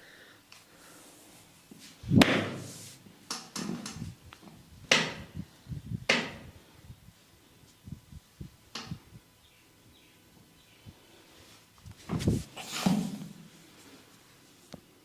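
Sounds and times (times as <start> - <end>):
hand slaps on skin: 2.2 - 2.6.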